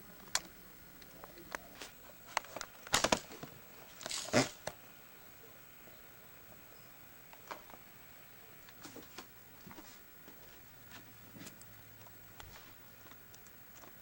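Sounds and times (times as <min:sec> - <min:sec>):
rustling crackle: 0:01.0 - 0:04.7.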